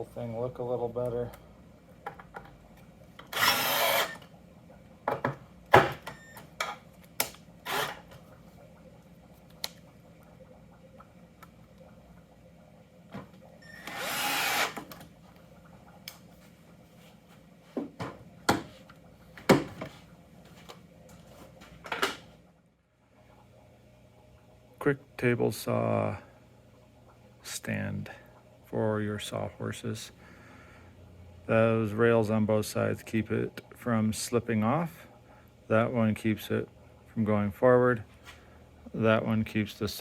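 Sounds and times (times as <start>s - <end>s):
power drill driving screws: 3.3s - 4.2s, 7.6s - 8.0s, 13.8s - 15.0s.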